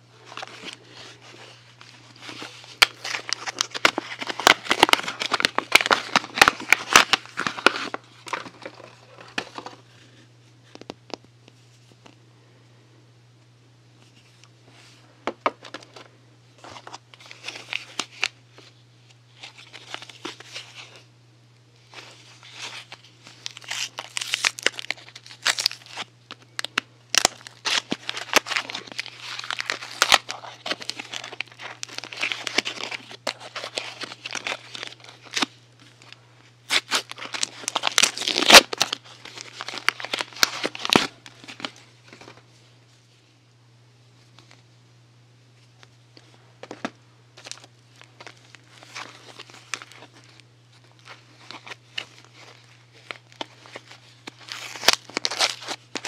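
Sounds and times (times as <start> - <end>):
wrapping crinkling and tearing: 0.2 - 9.8, 16.6 - 21.1, 21.8 - 42.4, 47.4 - 56.0.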